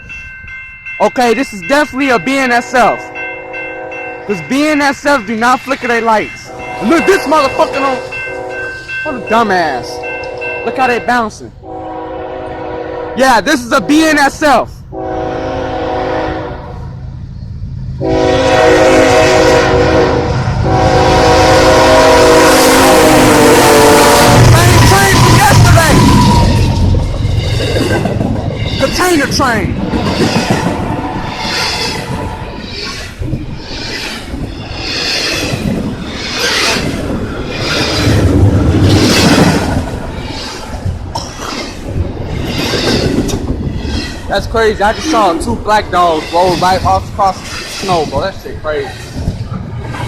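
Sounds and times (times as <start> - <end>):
train rumble: 0.0 - 50.0
locomotive air horn chord: 3.4 - 4.3, 6.5 - 10.8, 11.6 - 13.2, 14.9 - 16.8, 18.0 - 25.2.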